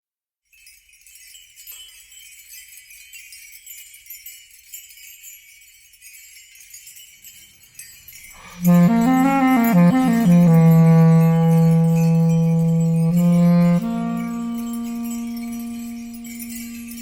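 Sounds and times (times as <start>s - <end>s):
sleigh bells jingling: 0.5s - 17.0s
song melody with bass line: 8.5s - 17.0s.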